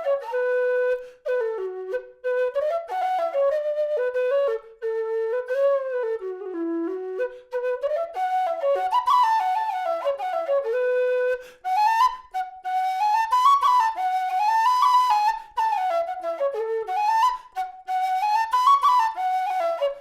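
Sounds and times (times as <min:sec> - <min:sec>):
low whistle folk melody: 0:00.0 - 0:20.0.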